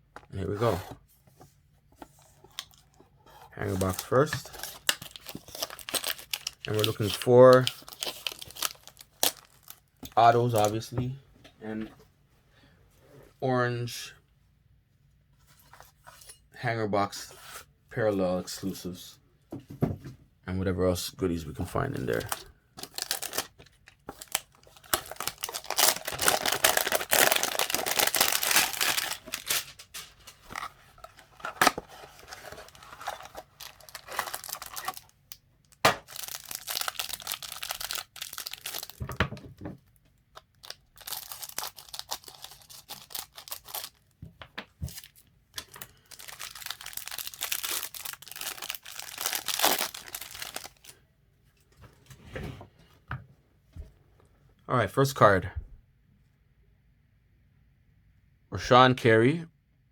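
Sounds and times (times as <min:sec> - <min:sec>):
packaging being torn: 0:03.6 - 0:09.8, 0:22.1 - 0:39.0, 0:40.6 - 0:44.0, 0:44.9 - 0:50.9
packaging crinkling: 0:03.6 - 0:09.8, 0:22.0 - 0:39.1, 0:40.4 - 0:44.1, 0:44.8 - 0:50.9.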